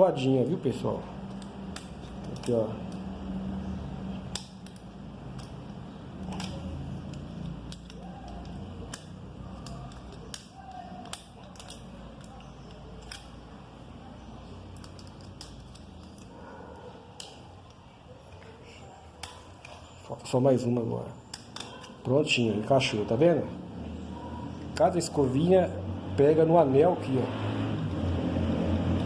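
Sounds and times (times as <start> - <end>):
screwdriver clicks and taps: 1.2 - 3.0, 6.2 - 13.3.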